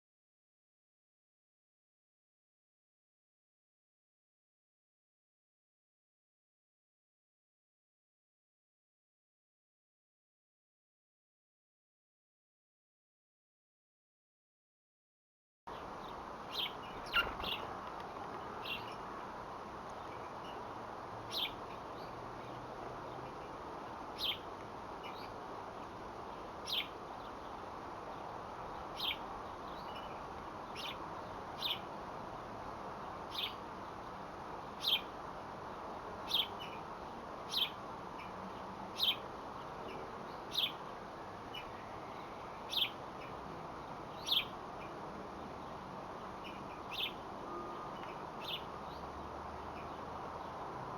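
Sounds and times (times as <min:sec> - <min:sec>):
small bird chirping: 0:15.7 - 0:31.9, 0:33.0 - 0:34.0, 0:34.6 - 0:35.2, 0:35.8 - 0:36.9, 0:37.5 - 0:43.4, 0:44.1 - 0:45.6, 0:46.2 - 0:50.6
steady background hiss: 0:15.7 - 0:50.9.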